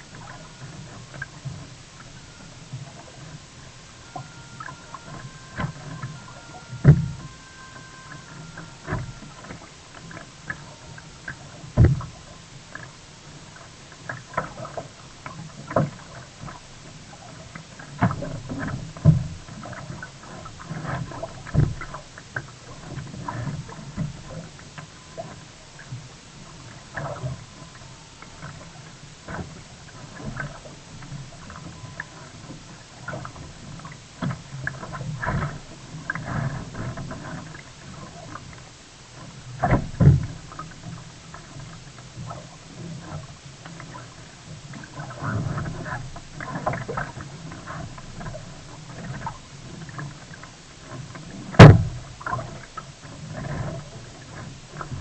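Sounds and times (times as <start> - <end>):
kayak paddle splashes: 0.0 - 55.0
knocks on kayak hull: 51.6 - 52.0.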